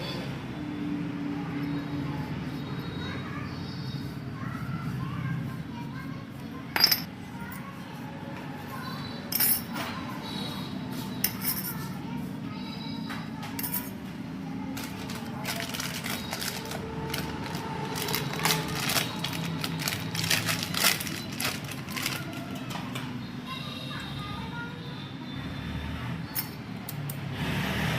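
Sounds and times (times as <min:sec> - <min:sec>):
metal tools clinking: 0:06.8 - 0:07.1, 0:09.3 - 0:09.8, 0:11.2 - 0:11.8, 0:13.6 - 0:14.0.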